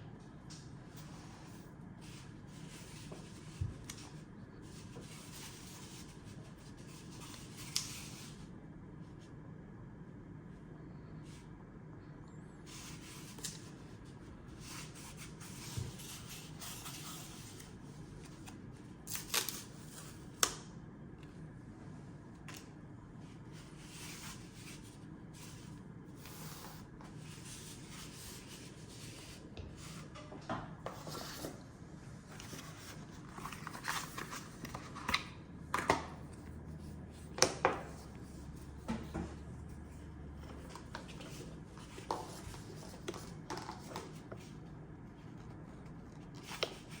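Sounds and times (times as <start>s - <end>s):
cardboard and paper rustling: 12.7s - 20.3s, 32.2s - 44.6s, 45.2s - 47.0s.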